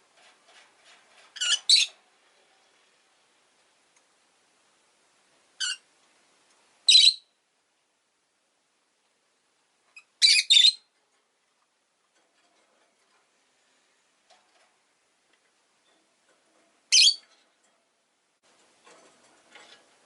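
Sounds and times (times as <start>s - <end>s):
lovebird high-pitched calls: 1.4s - 2.0s, 5.6s - 5.9s, 6.8s - 7.3s, 10.0s - 10.9s, 16.9s - 17.2s.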